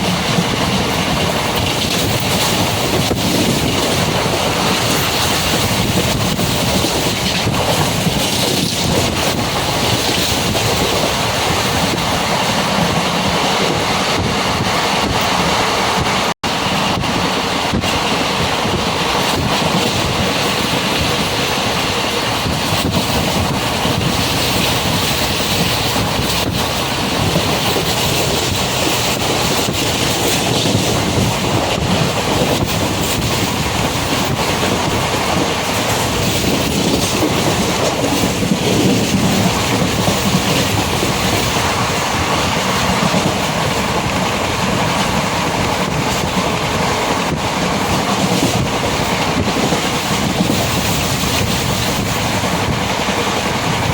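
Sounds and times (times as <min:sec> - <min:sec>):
loud rushing and rumbling: 0:00.0 - 0:53.9.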